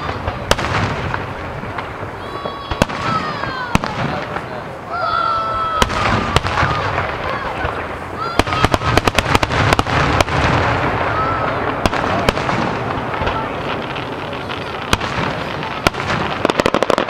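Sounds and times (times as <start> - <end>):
fireworks booms: 0.0 - 17.0
fireworks cracks and bangs: 0.0 - 17.0.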